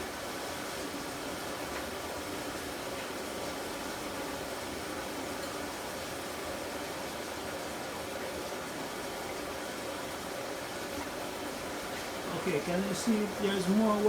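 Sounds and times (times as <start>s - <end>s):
washing machine running: 8.5s - 14.0s.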